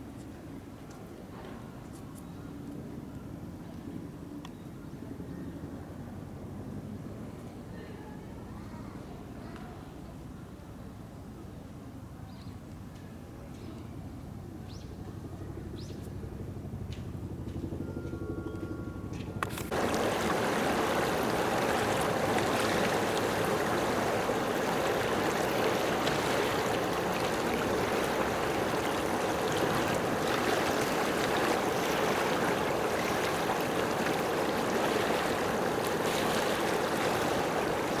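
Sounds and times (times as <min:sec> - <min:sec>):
running water rushing: 0:19.4 - 0:38.0.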